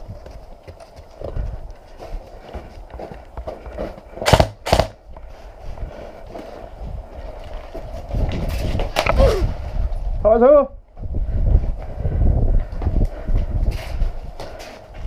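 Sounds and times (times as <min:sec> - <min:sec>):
footsteps crunching on rough ground: 0:00.0 - 0:10.0.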